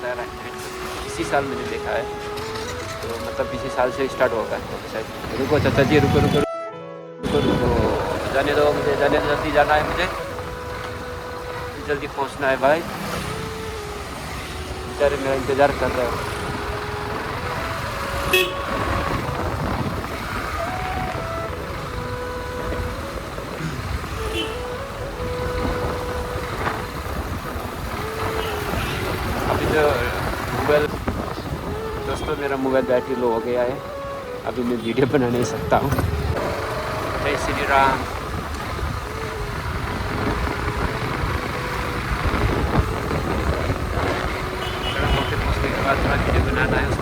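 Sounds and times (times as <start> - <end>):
motorcycle engine: 0.2 - 3.6, 7.2 - 32.2, 35.6 - 47.0
wind rumble: 7.2 - 33.0, 35.6 - 47.0
motorcycle engine running: 36.0 - 47.0.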